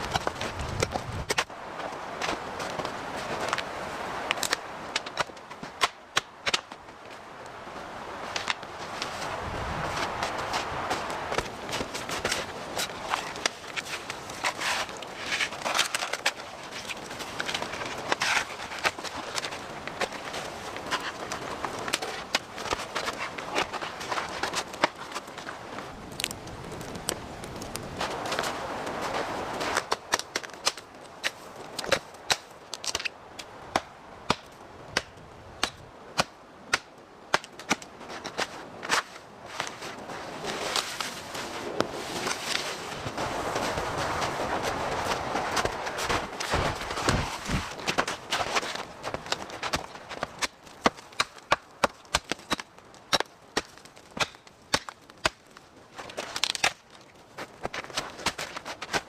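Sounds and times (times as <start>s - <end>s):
wood knocking and cracking: 46.0s - 59.0s.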